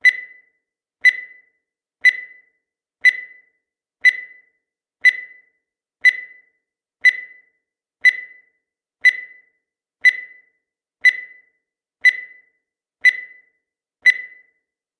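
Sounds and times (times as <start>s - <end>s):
countdown timer ticks: 0.0s - 14.6s.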